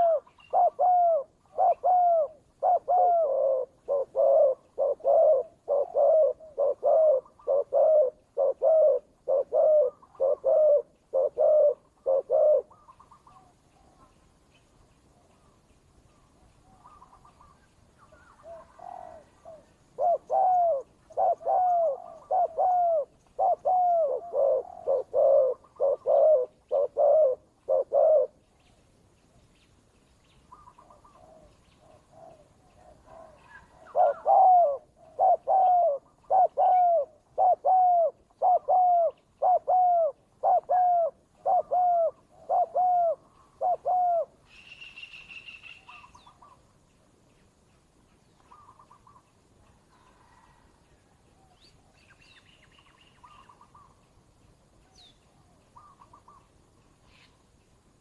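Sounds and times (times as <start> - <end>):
doves cooing: 0.0 - 14.1, 16.7 - 28.4, 30.5 - 44.4, 49.9 - 50.7.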